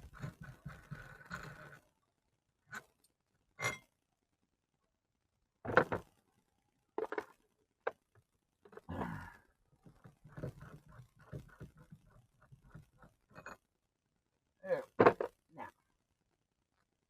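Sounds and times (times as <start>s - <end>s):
man sighing and breathing hard: 8.9s - 9.5s.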